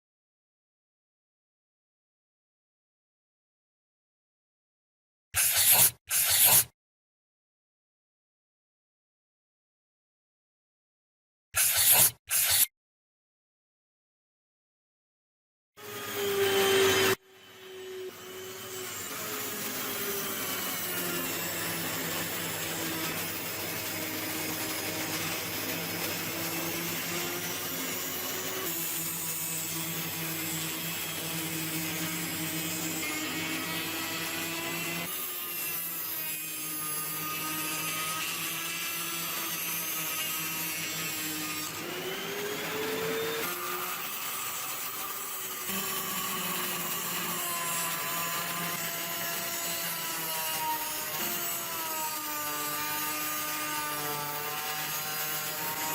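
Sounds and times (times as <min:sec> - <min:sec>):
electric power tool motor: 0:05.4 - 0:06.7, 0:11.6 - 0:12.7, 0:15.8 - 0:55.9.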